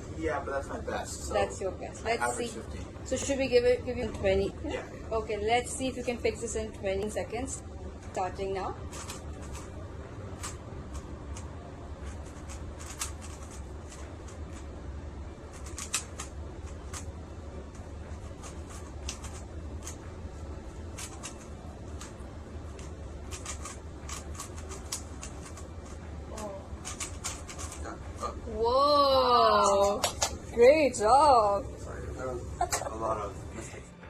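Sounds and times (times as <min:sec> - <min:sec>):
steady low hum: 0:00.0 - 0:34.0
puzzle cube plastic clicks: 0:08.9 - 0:09.7, 0:10.4 - 0:14.6, 0:15.5 - 0:17.1, 0:17.7 - 0:20.0, 0:20.9 - 0:27.8.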